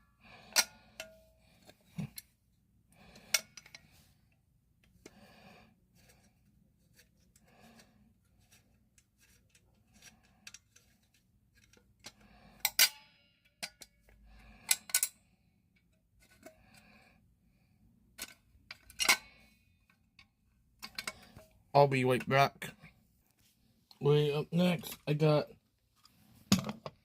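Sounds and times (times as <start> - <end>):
quiet breathing: 0.0 - 12.8, 13.4 - 18.5
metallic clicks of alarm pull station: 11.6 - 14.0.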